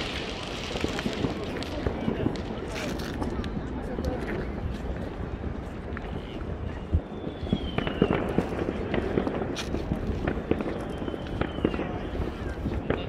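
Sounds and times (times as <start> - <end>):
fireworks popping and banging: 0.0 - 13.0
firework whistles gliding down: 6.9 - 9.5, 10.3 - 13.0.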